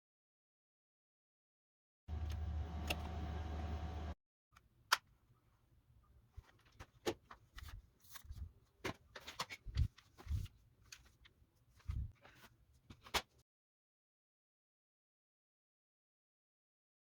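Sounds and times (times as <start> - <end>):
steady hum: 2.1 - 4.2.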